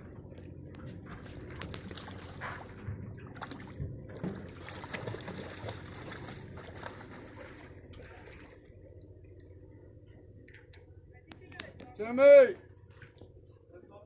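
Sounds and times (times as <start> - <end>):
water splashing and trickling: 0.0 - 9.7
boat engine running: 0.0 - 14.0.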